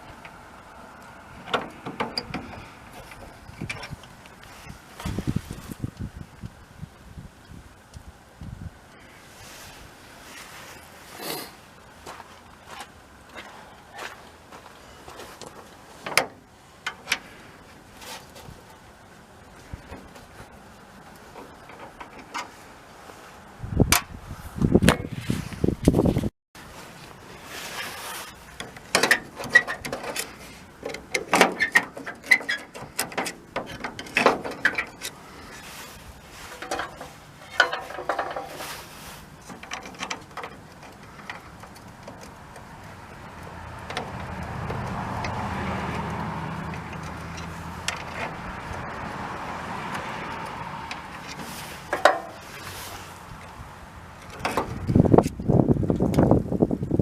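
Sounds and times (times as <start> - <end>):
steady low rumble: 0.0 - 21.6.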